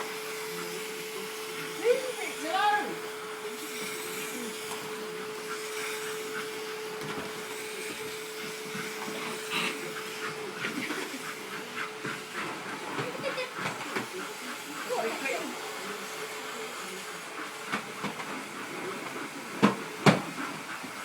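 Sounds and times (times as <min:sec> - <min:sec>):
vacuum cleaner running: 0:00.0 - 0:21.0.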